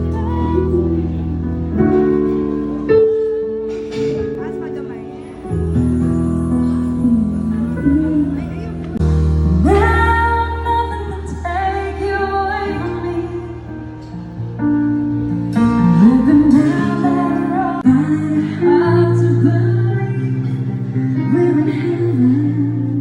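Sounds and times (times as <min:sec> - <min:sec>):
person singing slow song: 0:05.7 - 0:14.1, 0:15.5 - 0:23.0.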